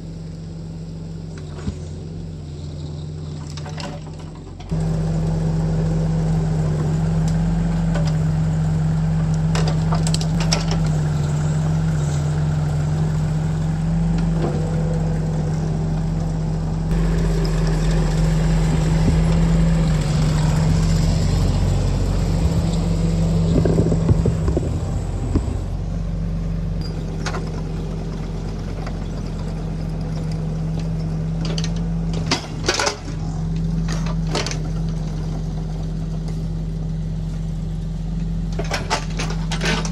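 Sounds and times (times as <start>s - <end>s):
engine running steadily: 0.0s - 39.9s
knocks and clatters: 23.4s - 25.7s.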